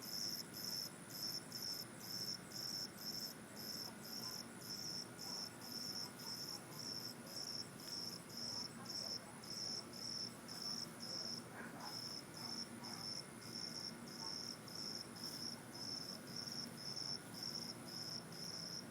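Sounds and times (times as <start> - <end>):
crickets chirping: 0.0 - 18.9
high-pitched insect tone: 0.0 - 18.9.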